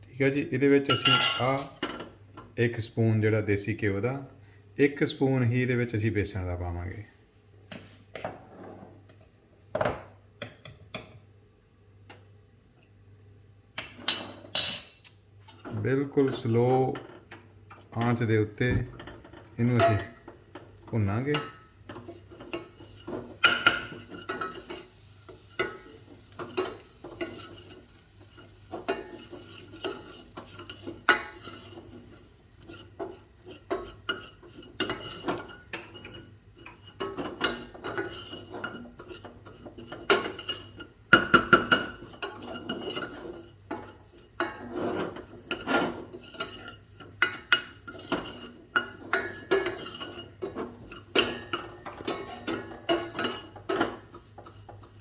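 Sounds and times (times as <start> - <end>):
spoon scraping a pan: 19.1 - 55.0.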